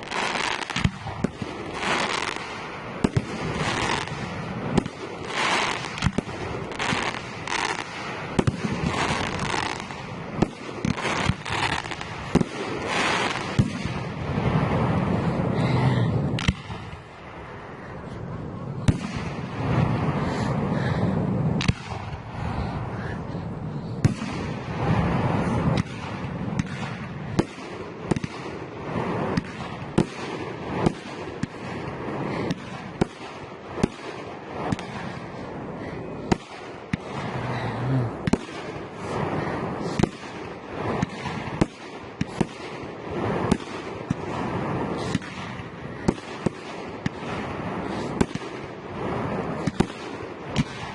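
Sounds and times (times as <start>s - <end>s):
continuous noisy rush: 0.0s - 50.9s
firework crackle and hiss: 0.0s - 50.9s.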